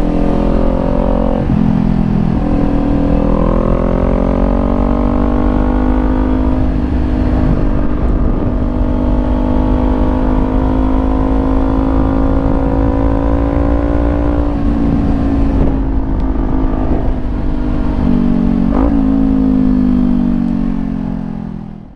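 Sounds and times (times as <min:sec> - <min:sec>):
motorcycle engine running: 0:00.0 - 0:21.9
wind on microphone: 0:00.0 - 0:21.9.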